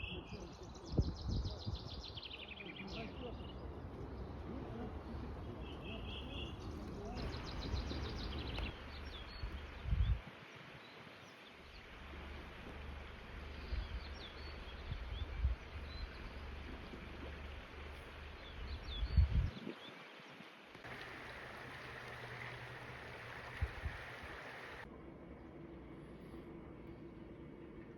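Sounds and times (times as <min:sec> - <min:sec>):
small birds chirping: 0:00.0 - 0:10.2, 0:20.8 - 0:24.8
wind buffeting microphone: 0:00.4 - 0:02.2, 0:07.2 - 0:10.4, 0:18.7 - 0:19.8, 0:20.8 - 0:24.9
steady rushing noise: 0:20.8 - 0:24.9.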